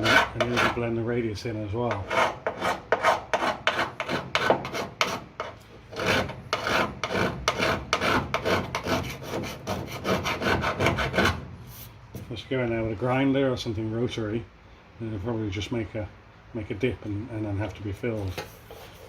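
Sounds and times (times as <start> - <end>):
hand file rasping on steel: 0.0 - 0.9, 1.8 - 11.4.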